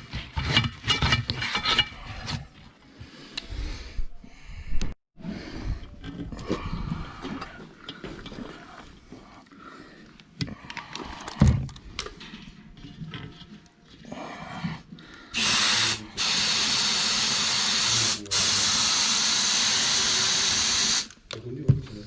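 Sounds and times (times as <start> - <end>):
compressed air hissing into tyre: 15.4 - 21.2.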